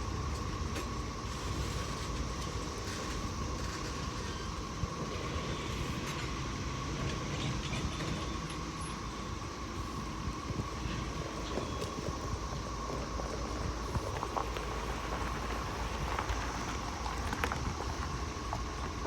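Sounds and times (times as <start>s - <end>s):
cicadas buzzing: 0.0s - 19.0s
train rumbling: 0.0s - 19.0s.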